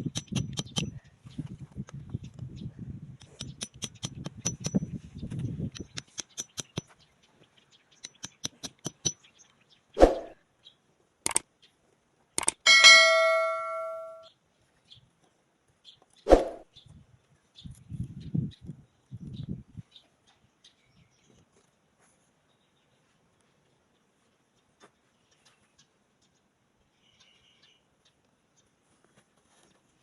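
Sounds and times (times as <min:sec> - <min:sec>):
ringing metallic clink: 0:12.7 - 0:14.3.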